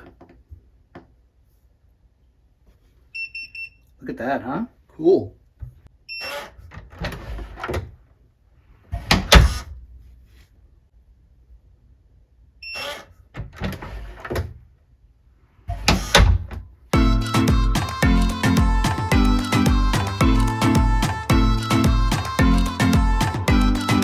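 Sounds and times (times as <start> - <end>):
music: 17.0 - 24.0.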